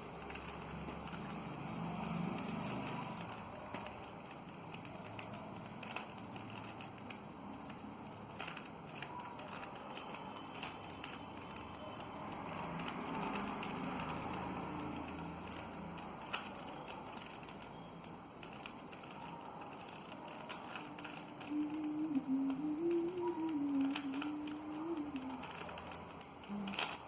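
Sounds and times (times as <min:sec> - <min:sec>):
puzzle cube clicking as twisted: 0:00.2 - 0:27.0.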